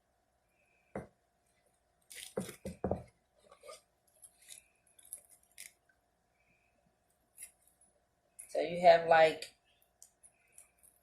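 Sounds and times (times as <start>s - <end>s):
small objects clicking and knocking: 4.1s - 5.9s, 10.0s - 11.0s.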